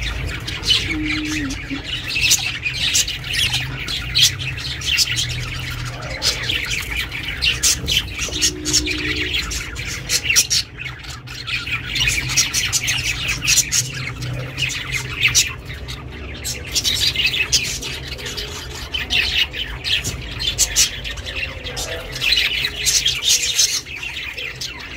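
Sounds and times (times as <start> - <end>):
steady low hum: 0.0 - 16.9
budgerigars chirping and chattering: 0.0 - 24.9.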